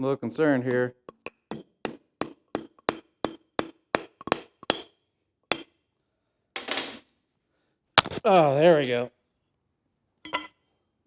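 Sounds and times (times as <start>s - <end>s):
hammer tapping on metal: 1.0s - 5.7s.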